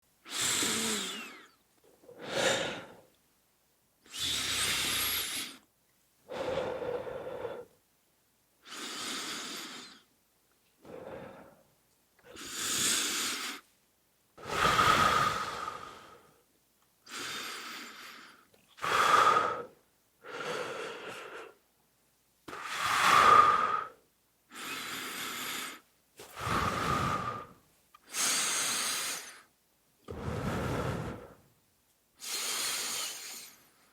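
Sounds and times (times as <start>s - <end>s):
person breathing heavily: 0.3s - 3.1s, 6.3s - 7.8s, 14.4s - 16.4s, 17.1s - 21.6s, 22.6s - 29.5s, 30.1s - 31.4s, 32.2s - 33.9s.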